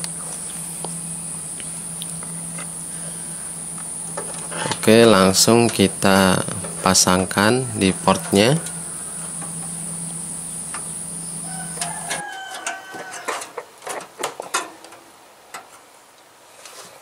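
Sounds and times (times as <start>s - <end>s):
steady hum: 0.0s - 13.5s.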